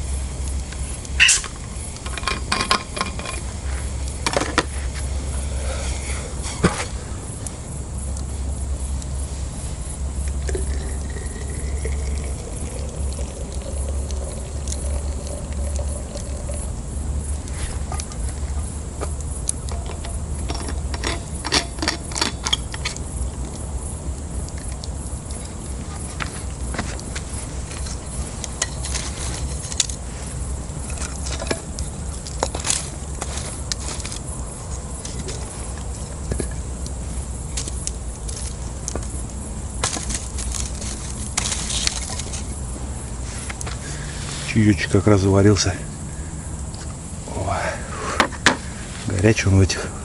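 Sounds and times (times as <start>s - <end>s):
campfire crackling: 0.0s - 44.6s
water heating rumble: 0.0s - 50.0s
low rumble: 5.1s - 21.4s
faint high ticking: 7.3s - 32.4s
faint wavering tones: 9.3s - 18.9s.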